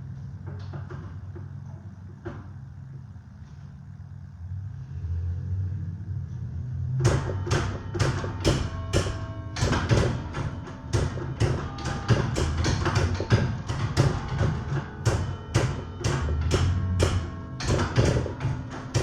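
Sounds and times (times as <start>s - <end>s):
church bells ringing: 7.1s - 19.0s.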